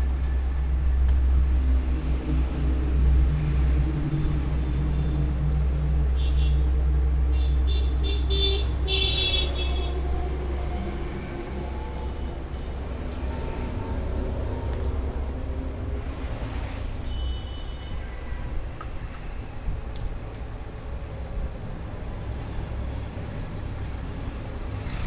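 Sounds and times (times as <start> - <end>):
vehicle engine rumbling: 0.0 - 25.0
high-pitched squeals: 9.1 - 14.8.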